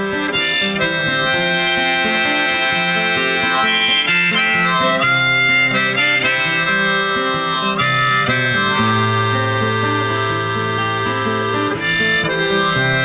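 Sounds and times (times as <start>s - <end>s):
acoustic guitar: 0.0s - 13.0s
harmonica: 0.0s - 13.0s.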